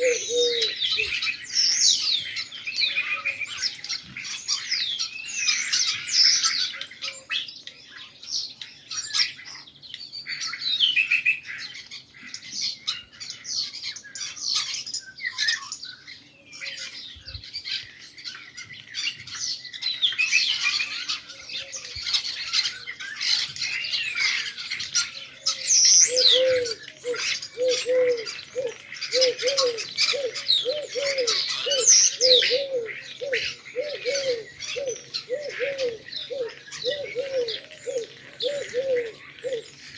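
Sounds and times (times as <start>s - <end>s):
pigeon cooing: 0.0s - 1.3s, 25.0s - 39.8s
small birds chirping: 0.0s - 39.9s.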